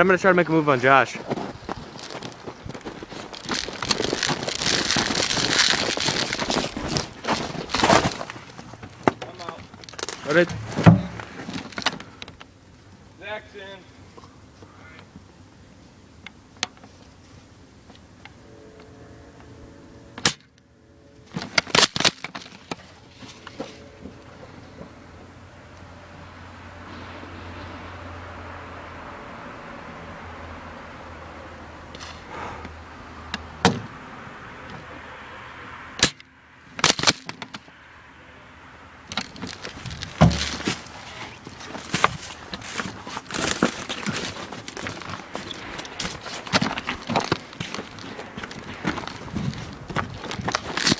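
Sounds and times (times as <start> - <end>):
footsteps crunching through snow: 0.6 - 8.8, 39.2 - 50.9.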